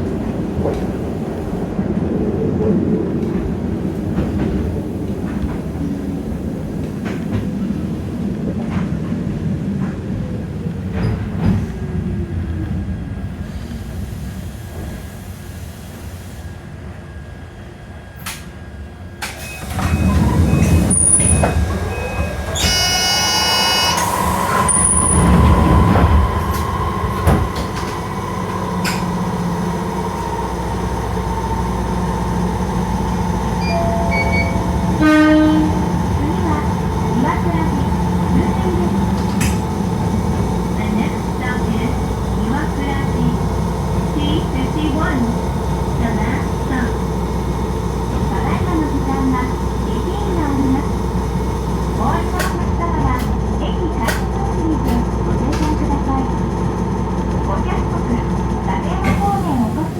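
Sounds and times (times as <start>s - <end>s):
electric train motor whine: 19.6s - 42.5s
short buzzer: 22.6s - 24.4s.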